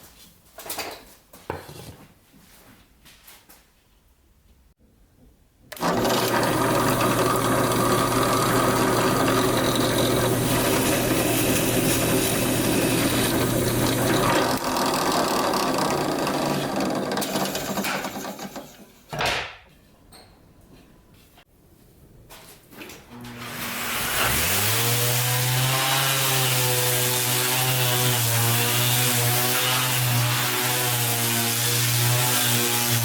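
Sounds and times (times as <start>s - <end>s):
electric power tool on plywood: 5.7s - 18.8s, 23.2s - 33.0s.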